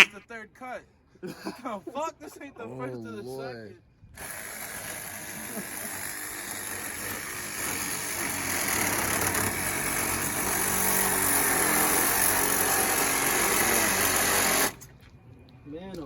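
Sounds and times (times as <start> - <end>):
battery-powered saw cutting metal: 4.2 - 14.8.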